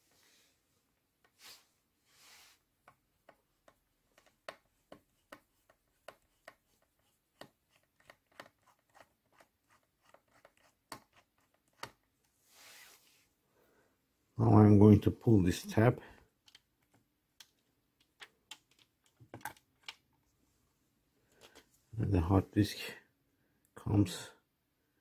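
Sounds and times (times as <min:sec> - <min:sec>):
soft brushing swishes: 0:12.4 - 0:13.4.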